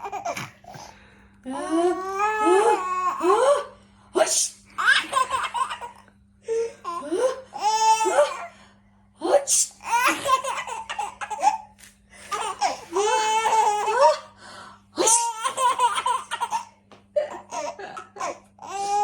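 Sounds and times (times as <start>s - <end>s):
baby laughing: 0.0s - 0.6s, 4.8s - 6.0s, 9.8s - 11.7s, 12.3s - 14.3s, 15.0s - 19.0s.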